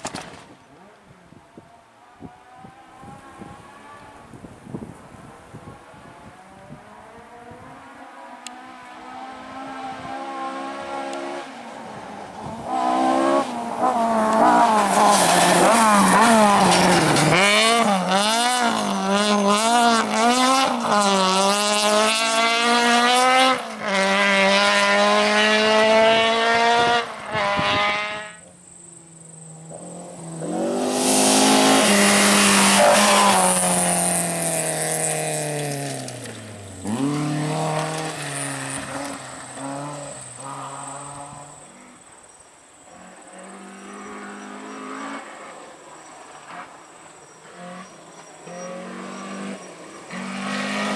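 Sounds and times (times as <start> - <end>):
rally car engines revving: 0.0 - 4.4, 5.4 - 42.1, 42.8 - 50.9.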